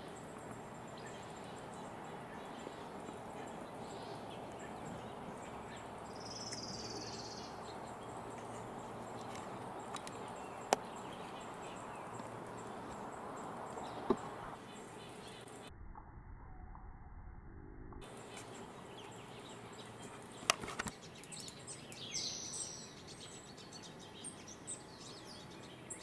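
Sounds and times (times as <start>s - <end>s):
high buzzy bird call: 0.0s - 15.7s
outdoor background hiss: 0.0s - 15.7s, 18.0s - 26.0s.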